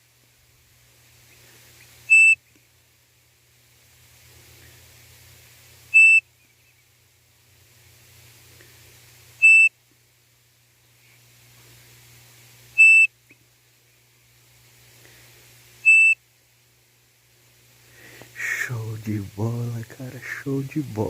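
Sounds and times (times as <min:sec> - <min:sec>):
bird-call whistle notes: 0:02.1 - 0:02.4, 0:05.9 - 0:06.8, 0:09.4 - 0:09.7, 0:12.8 - 0:13.1, 0:15.8 - 0:16.2.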